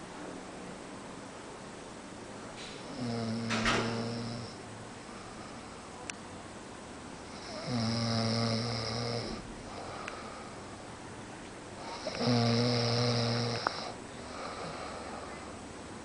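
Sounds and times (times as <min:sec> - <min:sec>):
man snoring: 0:02.9 - 0:04.6, 0:07.3 - 0:10.1, 0:11.8 - 0:15.2.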